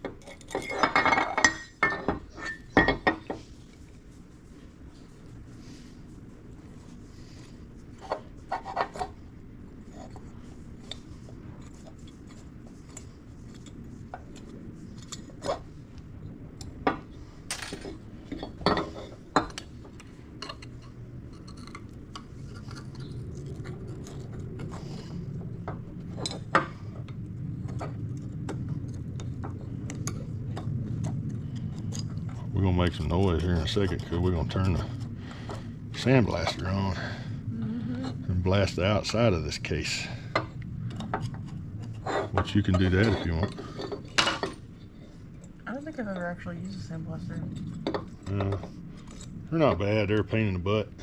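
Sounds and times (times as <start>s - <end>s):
low hum: 0.0s - 51.0s
metal tools clinking and knocking: 0.1s - 3.4s, 42.1s - 44.6s.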